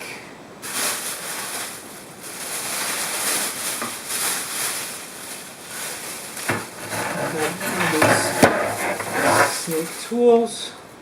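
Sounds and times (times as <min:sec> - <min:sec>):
drain snake cable scraping in pipe: 0:06.4 - 0:10.0.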